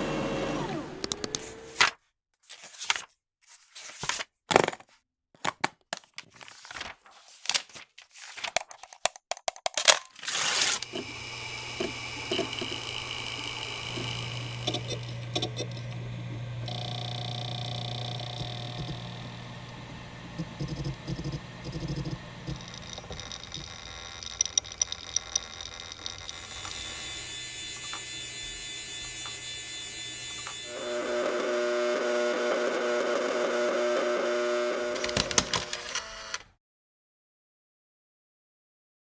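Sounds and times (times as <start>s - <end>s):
office machine electric hum: 0.0s - 1.9s, 10.8s - 36.4s
machine clicks: 1.0s - 1.6s, 10.8s - 16.0s, 16.6s - 26.8s
high whining tones: 10.8s - 35.0s.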